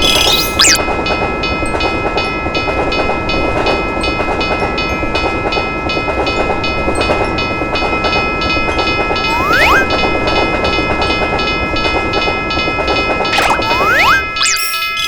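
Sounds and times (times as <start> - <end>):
railroad crossing bell ringing: 0.0 - 15.0.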